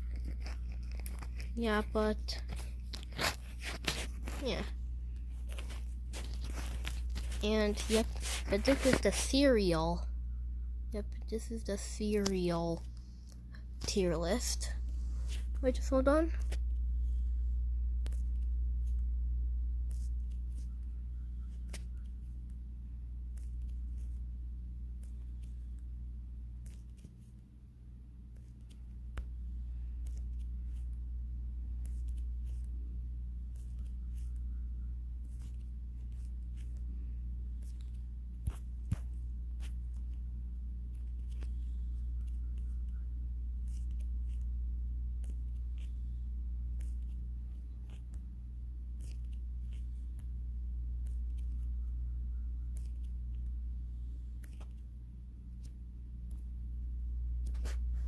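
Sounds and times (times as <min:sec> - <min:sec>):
clicks scrapes and rustles: 0:00.0 - 0:09.8, 0:26.6 - 0:27.4, 0:35.2 - 0:40.2, 0:40.8 - 0:43.0, 0:45.2 - 0:48.3, 0:48.9 - 0:50.4, 0:52.6 - 0:54.9
low electrical hum: 0:00.0 - 0:58.0.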